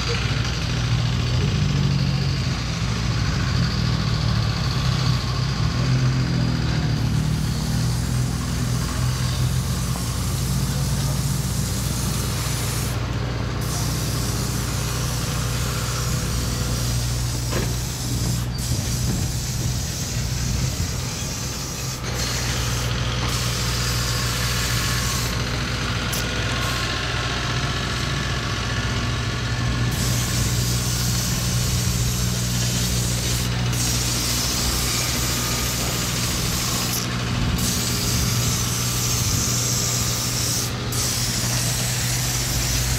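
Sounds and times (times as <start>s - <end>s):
machinery humming: 0.0s - 42.9s
hiss: 7.0s - 13.0s, 13.6s - 26.9s, 29.9s - 42.9s.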